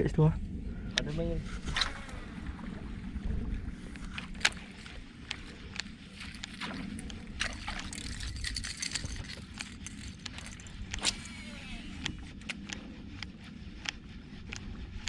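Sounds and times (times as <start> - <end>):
low steady rumble: 0.0 - 15.0
water sloshing around boat: 1.1 - 12.5.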